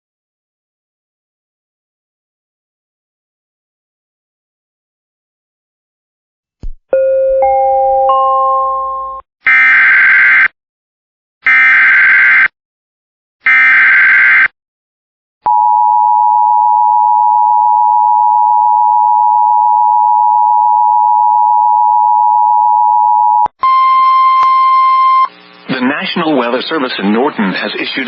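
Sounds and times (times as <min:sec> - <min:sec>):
two-tone attention signal: 0:15.5 - 0:25.3.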